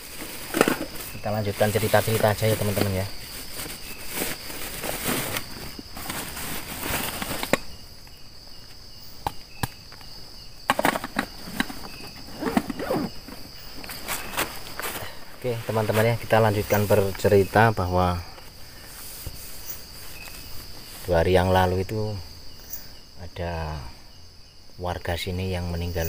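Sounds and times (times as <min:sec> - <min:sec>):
close rustling and handling: 0:00.0 - 0:08.8, 0:10.7 - 0:21.6
crickets chirring: 0:00.0 - 0:26.0.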